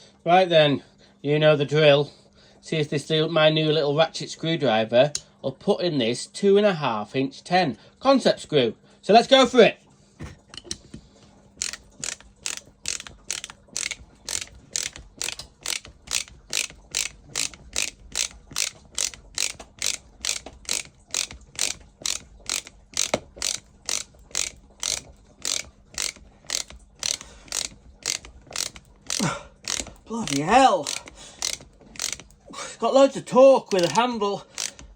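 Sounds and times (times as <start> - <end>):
ratchet screwdriver clicking: 11.6 - 32.4, 33.7 - 34.0, 34.6 - 34.9.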